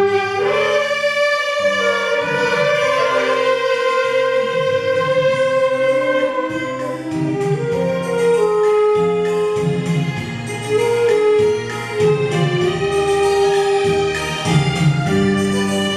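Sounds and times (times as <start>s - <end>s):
saxophone ensemble playing: 0.0s - 9.7s.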